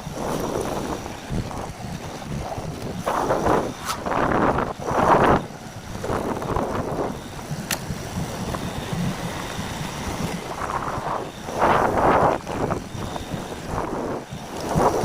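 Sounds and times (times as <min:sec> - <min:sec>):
moving vehicle rumble: 0:00.0 - 0:15.0
wind buffeting microphone: 0:00.0 - 0:15.0
sharp click: 0:07.6 - 0:07.9.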